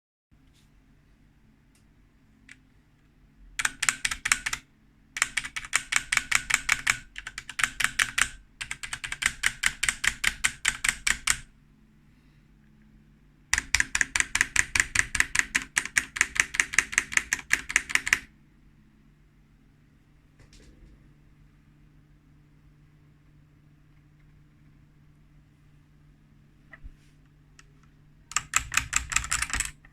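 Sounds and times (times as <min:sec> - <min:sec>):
mechanical keyboard clicking: 0:03.6 - 0:04.6, 0:05.2 - 0:11.5, 0:13.5 - 0:18.3, 0:28.3 - 0:29.9.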